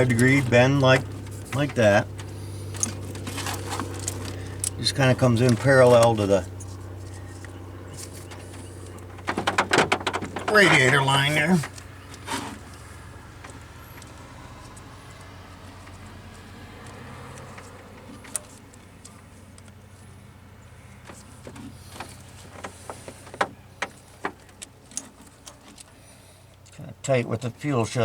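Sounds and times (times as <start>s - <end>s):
fuel line fittings clicking: 0.0s - 16.1s, 21.0s - 26.8s
steady low hum: 0.0s - 16.8s.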